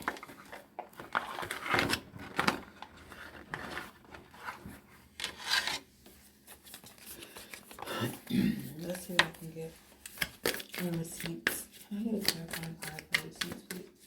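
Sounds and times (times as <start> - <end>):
cards being shuffled: 5.2 - 8.2, 10.0 - 13.9.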